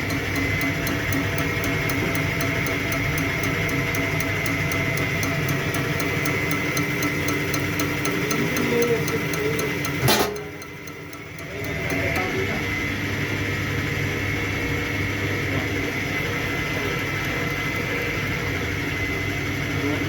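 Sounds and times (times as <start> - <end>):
injector rapid ticking: 0.0 - 12.4
pump whine: 0.0 - 20.0.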